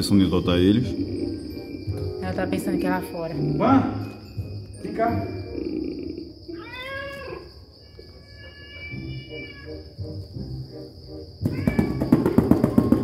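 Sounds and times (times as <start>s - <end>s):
crickets trilling: 0.0s - 13.0s
cat meows through speaker: 6.5s - 9.8s.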